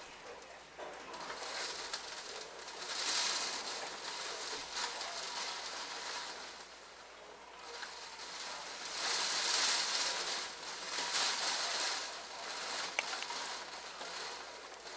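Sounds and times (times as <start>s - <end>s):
rain hissing: 0.0s - 14.9s
raindrop ticks: 8.9s - 14.9s.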